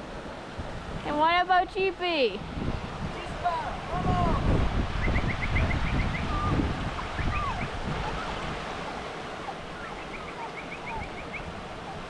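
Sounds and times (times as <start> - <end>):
river water rushing: 0.0 - 12.0
wind buffeting microphone: 0.0 - 12.0
sliding whistles: 5.0 - 8.3.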